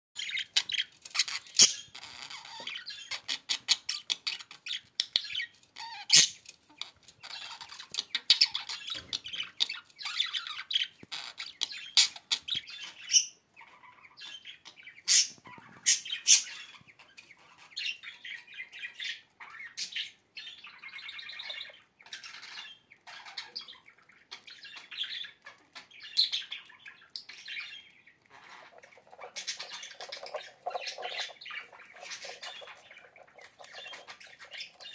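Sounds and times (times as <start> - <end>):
bird squawking and chirping: 19.6 - 34.9.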